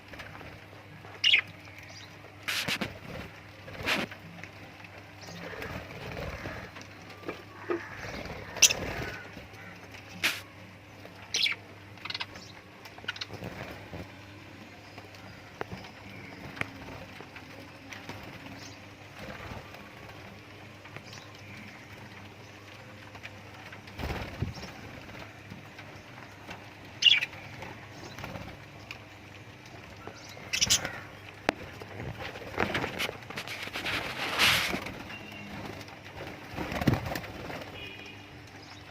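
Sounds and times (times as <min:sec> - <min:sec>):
lovebirds chirping: 0:05.1 - 0:10.5, 0:11.2 - 0:16.9, 0:25.8 - 0:29.3, 0:29.9 - 0:38.9.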